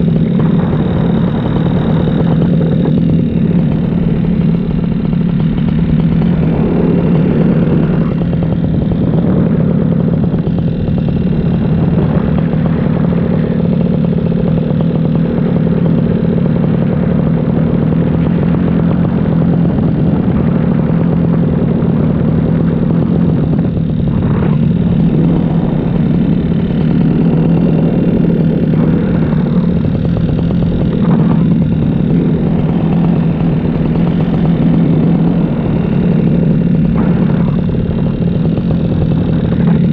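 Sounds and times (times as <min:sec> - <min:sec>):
paramotor engine droning: 0:00.0 - 0:39.9.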